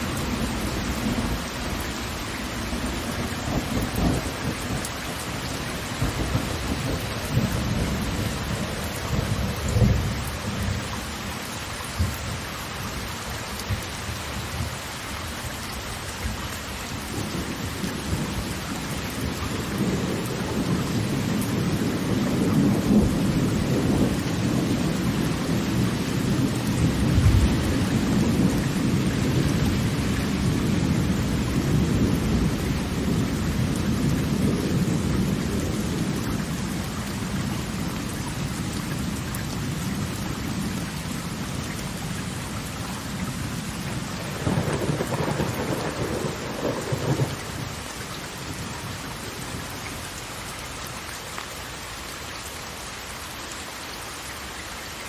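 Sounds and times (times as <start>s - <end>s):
waterfall roaring: 0.0s - 22.0s.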